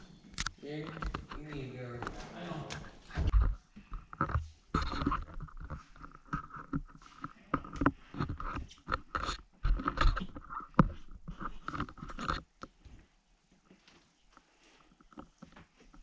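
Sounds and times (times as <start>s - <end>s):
knocks clicks and scraping: 0.0s - 12.8s.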